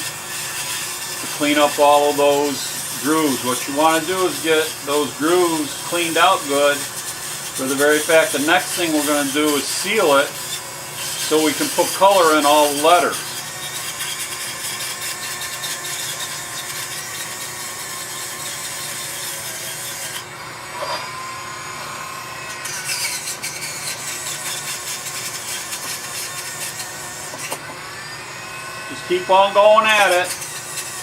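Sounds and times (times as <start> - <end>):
bristle brushes scrubbing wood: 1.2 - 6.9, 7.6 - 10.3.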